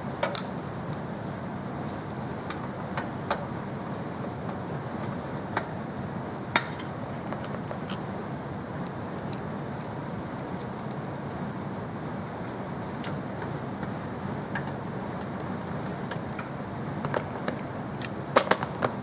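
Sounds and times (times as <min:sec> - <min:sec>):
steady background hiss: 0:00.0 - 0:19.0.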